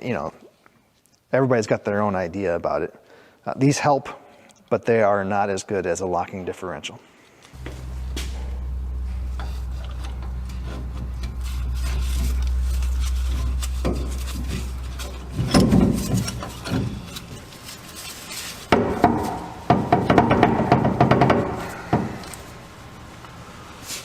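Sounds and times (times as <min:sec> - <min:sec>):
hard parts knocking and clinking: 0:07.6 - 0:22.4
steady low hum: 0:07.6 - 0:23.9.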